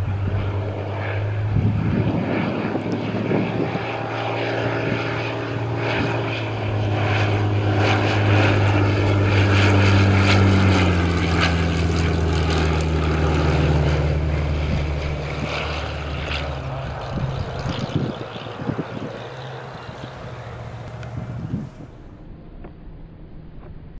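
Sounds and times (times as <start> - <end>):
wind gusts on microphone: 0.0 - 22.2
propeller plane engine running: 0.0 - 22.4.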